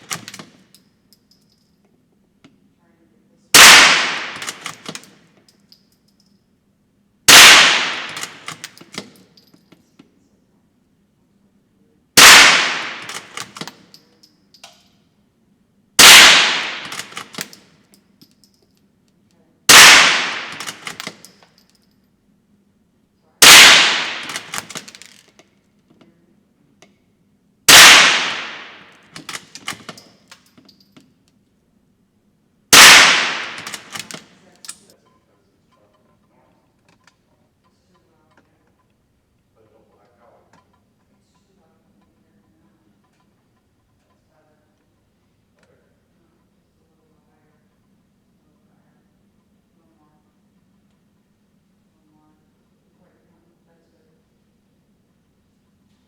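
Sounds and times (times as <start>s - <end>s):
rifle shots cracking: 3.6s - 5.1s, 7.3s - 8.8s, 12.2s - 13.7s, 16.0s - 17.5s, 19.7s - 21.2s, 23.4s - 25.1s, 27.7s - 29.8s, 32.7s - 34.4s
rifle bolt clicking: 3.6s - 5.6s, 7.3s - 9.2s, 12.4s - 14.0s, 16.0s - 17.6s, 19.7s - 21.6s, 23.5s - 25.3s, 27.7s - 30.6s, 32.8s - 34.8s.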